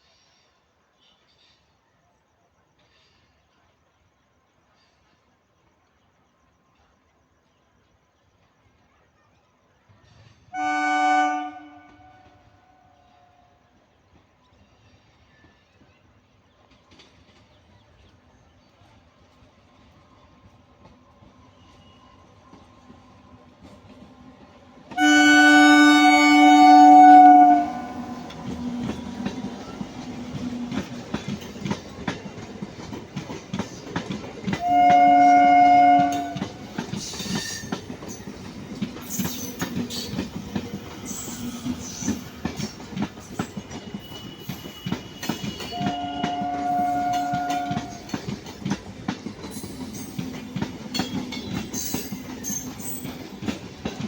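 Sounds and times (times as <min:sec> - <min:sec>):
moving train rumble: 0:09.9 - 0:54.0
train horn blasts: 0:10.5 - 0:13.4, 0:24.9 - 0:29.4, 0:34.6 - 0:36.8, 0:43.7 - 0:48.2
wheels clacking over rail joints: 0:21.8 - 0:54.0.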